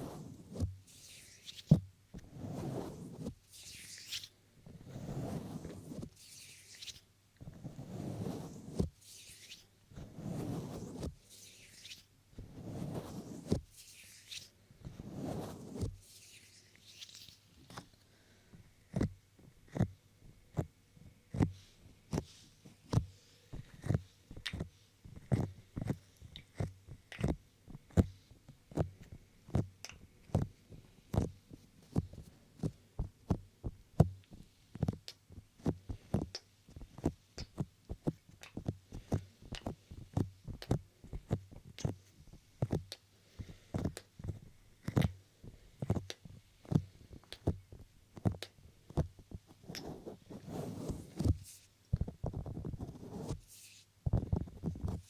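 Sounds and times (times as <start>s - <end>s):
fingertips tapping microphone: 45.8s - 55.0s.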